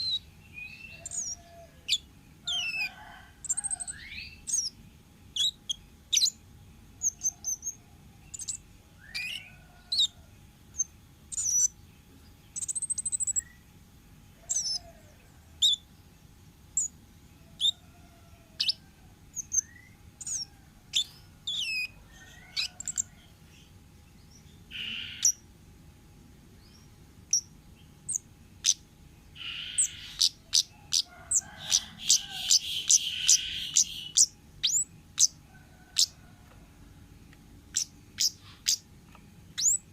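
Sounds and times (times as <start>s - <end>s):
songbird chirps and whistles: 0.0s - 6.4s, 7.0s - 11.8s, 12.5s - 13.7s, 14.4s - 15.9s, 18.6s - 23.4s, 24.2s - 25.4s, 29.4s - 35.4s, 37.7s - 38.8s, 39.5s - 39.9s
harsh bird chatter: 0.8s - 4.7s, 19.4s - 23.1s, 24.7s - 25.4s, 29.4s - 36.2s, 37.7s - 38.8s
harsh rasping bird call: 24.7s - 25.4s, 29.4s - 34.8s.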